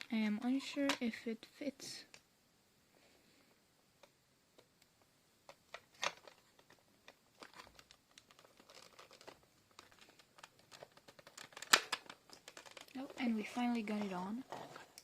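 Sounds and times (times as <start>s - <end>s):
plastic parts clicking and rustling: 5.4s - 15.0s.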